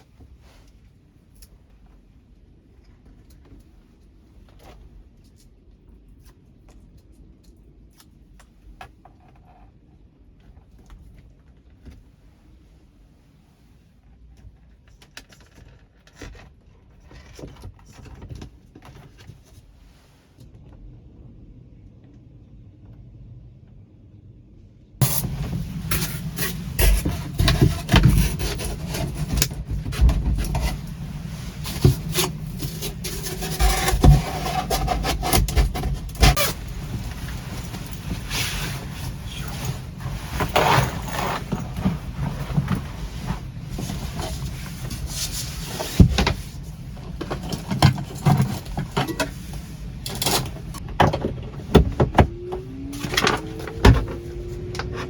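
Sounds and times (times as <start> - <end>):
low steady rumble: 16.1 - 55.0.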